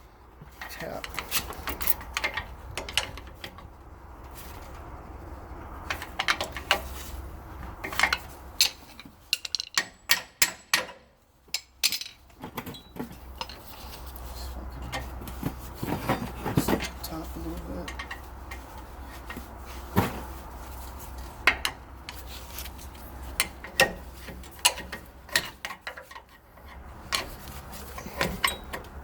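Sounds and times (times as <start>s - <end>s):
metal tapping on brake caliper: 23.4s - 29.0s.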